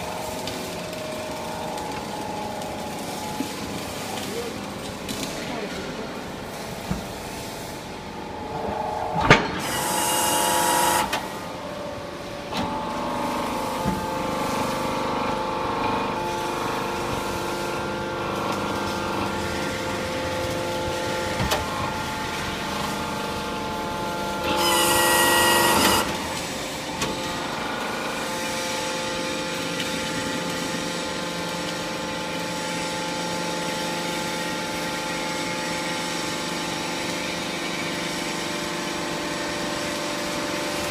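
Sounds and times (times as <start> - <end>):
hydraulic press humming: 6.2 - 31.3.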